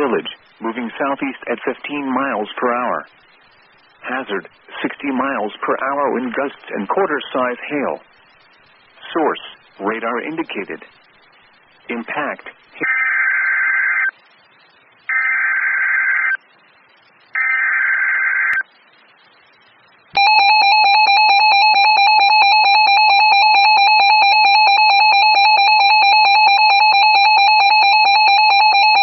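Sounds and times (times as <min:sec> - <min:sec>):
harsh buzzy digital data bursts: 0:15.1 - 0:16.4
two-tone alarm signal: 0:20.2 - 0:29.0.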